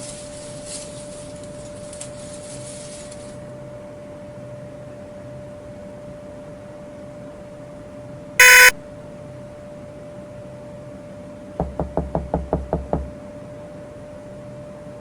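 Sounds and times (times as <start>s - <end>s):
harsh electronic buzz: 8.4s - 8.8s
faint steady hum: 8.4s - 8.9s
rapid knocking on a door: 11.6s - 13.2s.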